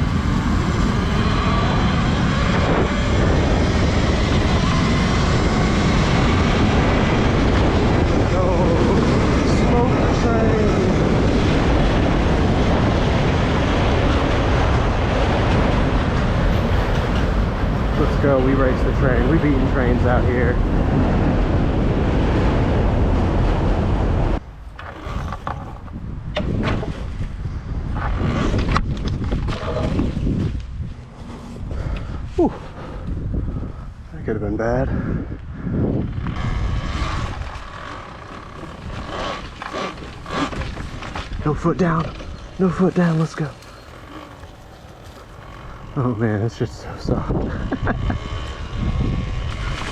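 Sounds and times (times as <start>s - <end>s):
train running: 0.0s - 26.0s, 37.0s - 49.9s
wind rushing over microphone: 0.0s - 49.9s.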